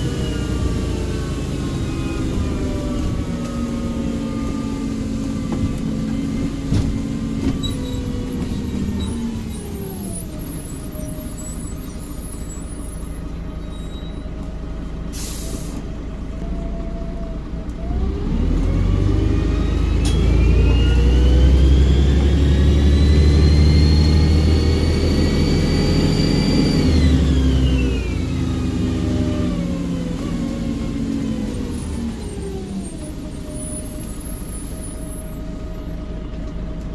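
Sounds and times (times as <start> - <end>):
bus engine idling: 0.0 - 36.9
turbocharger whistle: 20.0 - 28.1.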